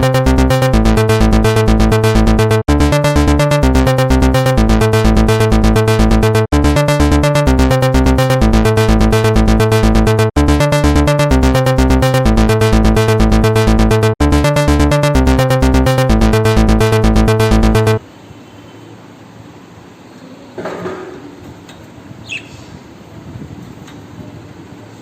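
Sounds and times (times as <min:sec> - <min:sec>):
electronic music with beat: 0:00.0 - 0:18.0.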